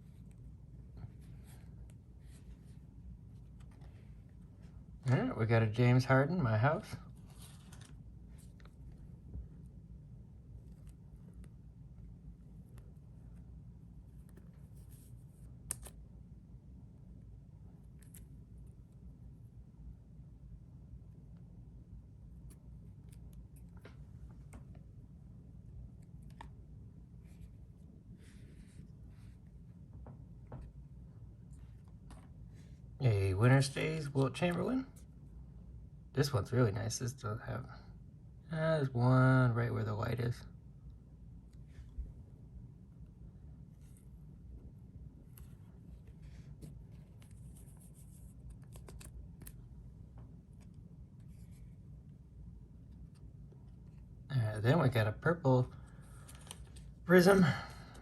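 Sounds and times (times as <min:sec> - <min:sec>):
low steady hum: 0:00.0 - 0:58.0
cards sliding rustle: 0:07.1 - 0:09.1, 0:12.5 - 0:16.0, 0:45.2 - 0:51.9, 0:55.8 - 0:57.0
trading cards clicking: 0:15.7 - 0:16.0.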